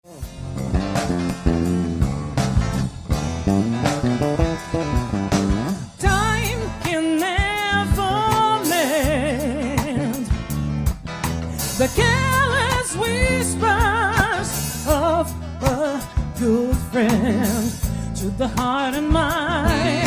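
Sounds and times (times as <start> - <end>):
plucked-string bass and chords: 0.0 - 20.0
percussion hits: 0.2 - 6.9.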